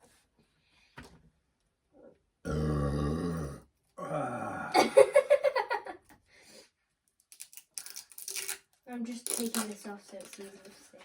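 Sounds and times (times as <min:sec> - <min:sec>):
broken vocal sounds: 0:02.4 - 0:05.0
man burping: 0:02.4 - 0:05.1.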